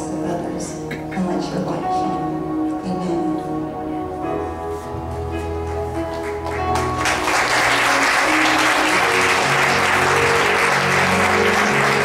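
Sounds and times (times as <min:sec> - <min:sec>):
worship band music: 0:00.1 - 0:12.0
congregation applauding: 0:05.7 - 0:12.0.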